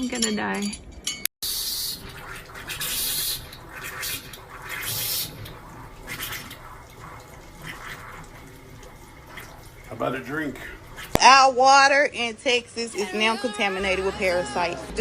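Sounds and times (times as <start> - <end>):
water running and splashing: 1.4 - 11.9.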